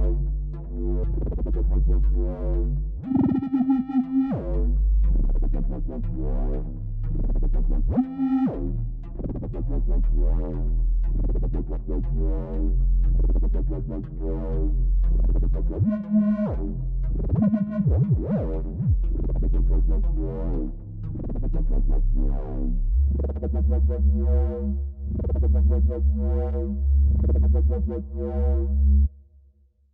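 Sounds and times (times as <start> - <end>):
sustained deep bass: 0.0 - 29.1
repeated synthesizer keyboard notes: 3.0 - 4.4.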